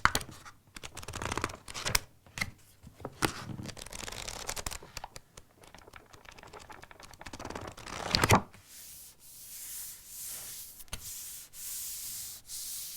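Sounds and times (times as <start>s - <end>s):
book pages riffled: 3.0s - 9.0s
paper rubbing strokes: 8.6s - 12.9s.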